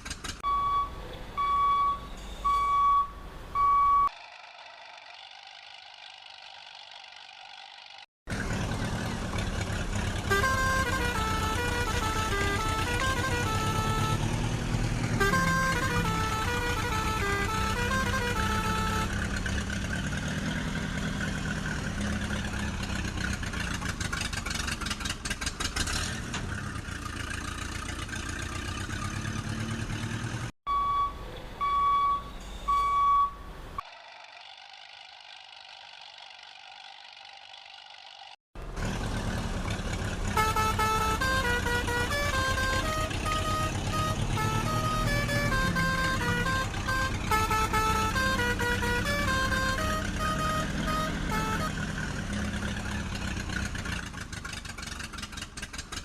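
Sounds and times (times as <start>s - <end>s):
short horn beeps: 10.3s - 14.4s, 15.2s - 19.2s, 40.4s - 51.9s.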